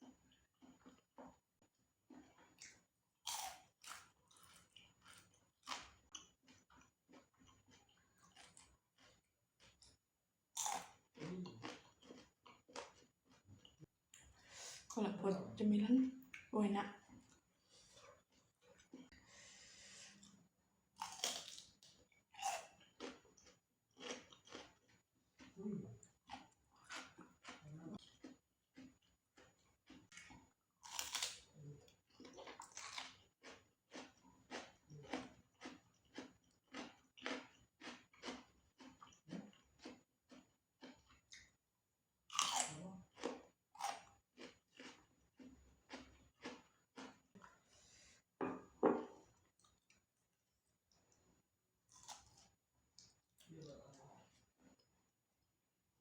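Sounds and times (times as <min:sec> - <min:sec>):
crunchy chewing: 0:02.0 - 0:14.3, 0:20.1 - 0:41.6, 0:42.3 - 0:47.9, 0:51.8 - 0:53.6
soft breath: 0:19.2 - 0:20.3, 0:47.6 - 0:48.4.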